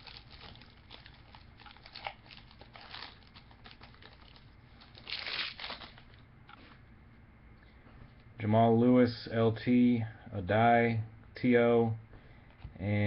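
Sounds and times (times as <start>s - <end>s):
wrapper tearing and crinkling: 0.0s - 6.2s.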